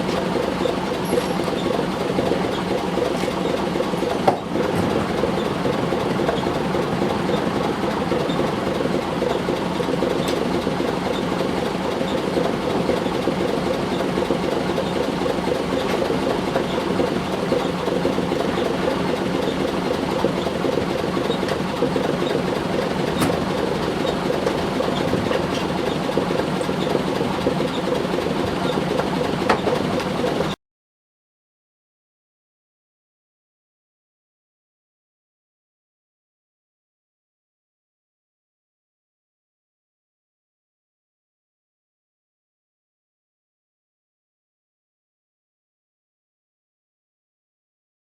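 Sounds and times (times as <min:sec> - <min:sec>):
engine droning: 0:00.0 - 0:30.5.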